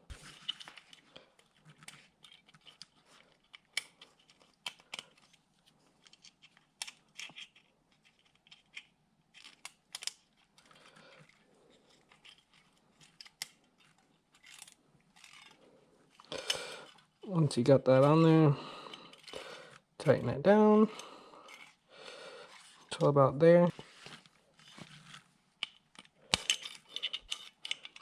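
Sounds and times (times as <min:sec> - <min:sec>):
small metal parts clicking and scraping: 0:00.3 - 0:05.4, 0:06.0 - 0:17.2, 0:18.8 - 0:19.5, 0:20.9 - 0:21.8, 0:24.6 - 0:28.0.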